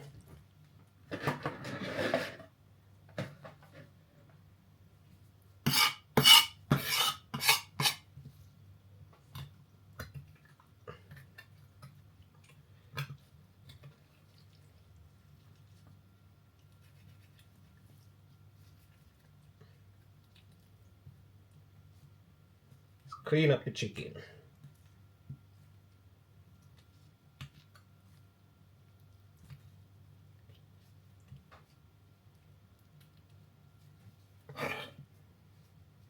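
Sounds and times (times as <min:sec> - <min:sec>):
low room hum: 0:00.0 - 0:36.0
utensil scraping a dish: 0:01.1 - 0:02.5, 0:05.6 - 0:08.1.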